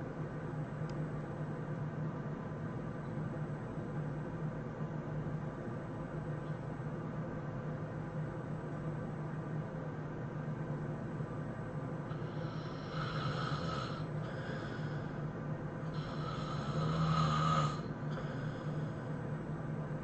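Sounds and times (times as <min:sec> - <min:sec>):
person snoring: 0:12.1 - 0:15.2, 0:15.9 - 0:19.0.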